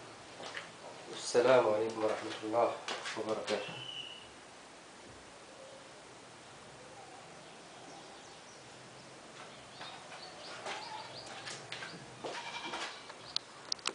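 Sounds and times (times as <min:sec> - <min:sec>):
short bird chirps and calls: 0:03.6 - 0:04.3.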